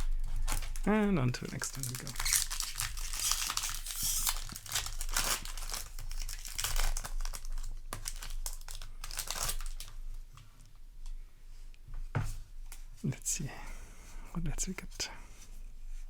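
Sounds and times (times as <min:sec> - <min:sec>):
foil wrapper tearing and crinkling: 0:00.0 - 0:10.2.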